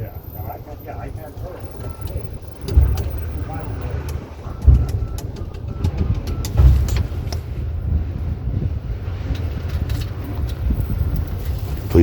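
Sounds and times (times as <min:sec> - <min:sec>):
low rumble of street noise: 0:00.0 - 0:12.0
payphone keypad beeping: 0:01.6 - 0:07.1
heavy thumps: 0:02.6 - 0:08.7.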